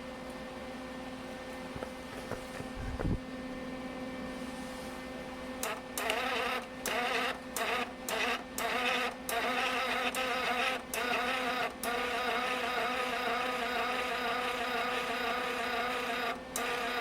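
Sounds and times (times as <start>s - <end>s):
welder humming: 5.6s - 17.0s
wire-feed motor buzzing: 5.6s - 17.0s.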